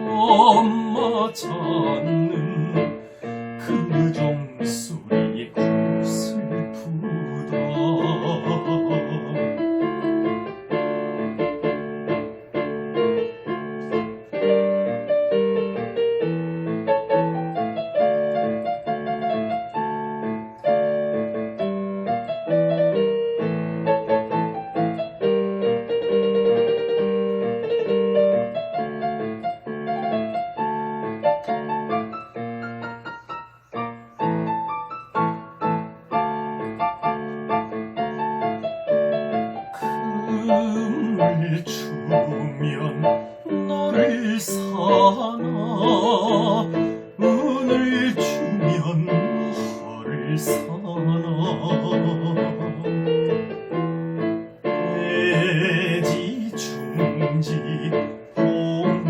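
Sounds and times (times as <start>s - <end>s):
electric keyboard melody: 0.0s - 59.0s
person singing a word: 3.6s - 9.6s, 39.8s - 52.8s, 55.0s - 59.0s.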